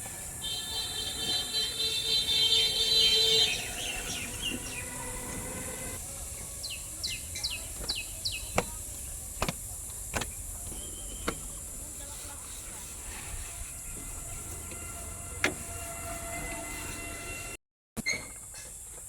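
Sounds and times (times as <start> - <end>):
high held bird call: 0.4 - 5.9.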